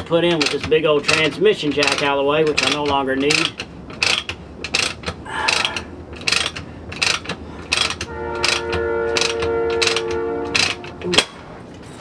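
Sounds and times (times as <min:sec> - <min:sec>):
ratchet wrench clicking: 0:00.3 - 0:11.3
steady pitched tone: 0:08.0 - 0:11.5.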